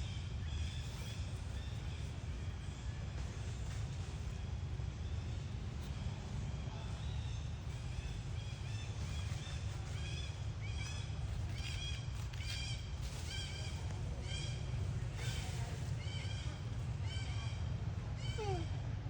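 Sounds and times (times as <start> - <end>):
baby monkey crying: 18.2 - 18.7.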